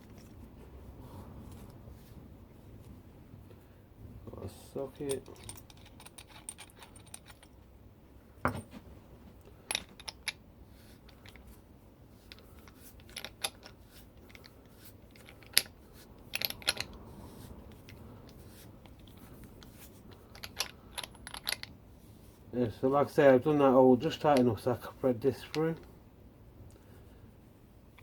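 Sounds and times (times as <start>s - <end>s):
clicks and clinks of fittings handled: 5.0s - 7.6s, 9.4s - 10.4s, 12.2s - 17.0s, 17.7s - 21.8s, 24.0s - 24.7s, 25.3s - 25.9s.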